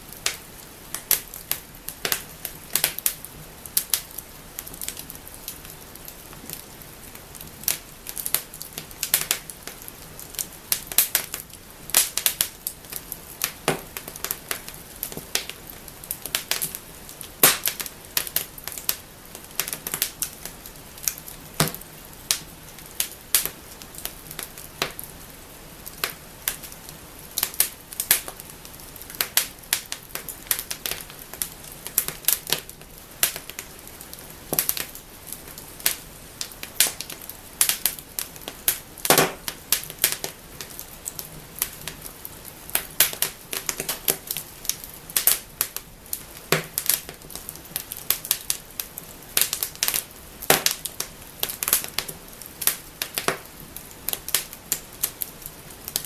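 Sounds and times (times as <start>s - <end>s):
faint steady hiss: 0.0s - 56.0s
wood fire crackling and popping: 0.0s - 56.0s.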